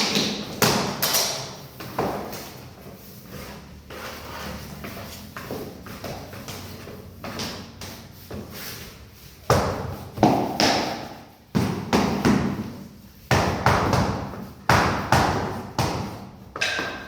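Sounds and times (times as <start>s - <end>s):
heavy blows on flooring: 9.4s - 17.0s.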